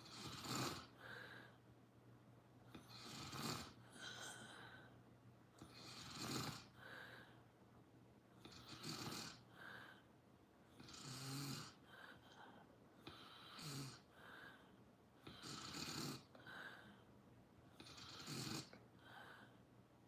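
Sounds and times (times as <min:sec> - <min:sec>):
person snoring: 0:00.0 - 0:01.4, 0:02.7 - 0:04.7, 0:05.6 - 0:07.1, 0:08.4 - 0:09.8, 0:10.8 - 0:11.8, 0:13.0 - 0:14.1, 0:15.2 - 0:16.8, 0:17.8 - 0:18.8.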